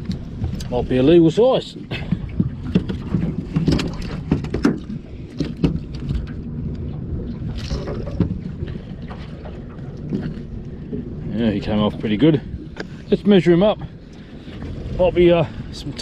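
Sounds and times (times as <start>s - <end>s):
steady low rumble: 0.0s - 16.0s
fish knocking in a boat: 1.9s - 6.3s.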